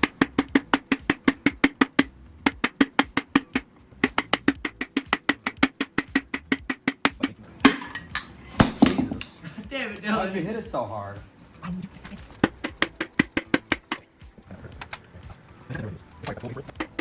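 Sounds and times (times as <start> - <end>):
rapid even knocking: 0.0 - 7.9, 12.4 - 14.2, 16.7 - 17.0.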